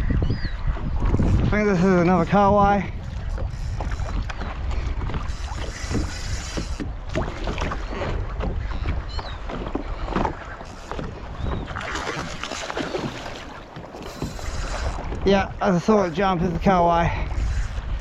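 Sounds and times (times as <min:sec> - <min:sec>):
wind buffeting microphone: 0:00.0 - 0:18.0
water slapping against kayak hull: 0:02.9 - 0:15.8
splashes and knocks: 0:06.8 - 0:15.2.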